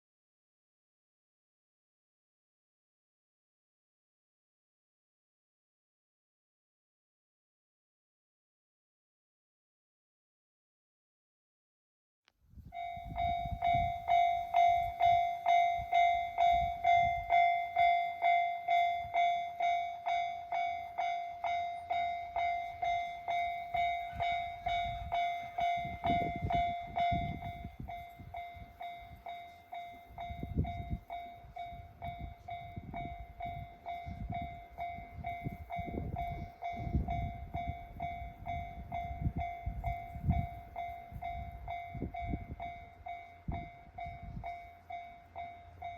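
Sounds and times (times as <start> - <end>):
level crossing warning bell: 12.7 - 45.9.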